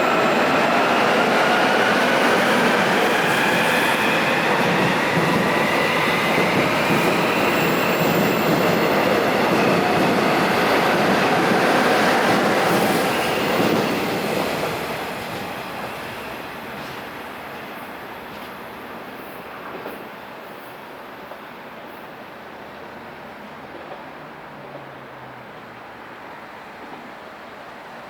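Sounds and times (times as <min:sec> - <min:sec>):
train wheels rumbling on rails: 0:00.0 - 0:22.0.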